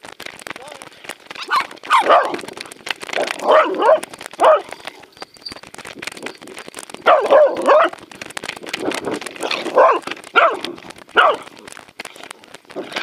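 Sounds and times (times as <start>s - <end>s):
dogs barking and yipping: 1.3s - 8.0s, 8.9s - 11.6s.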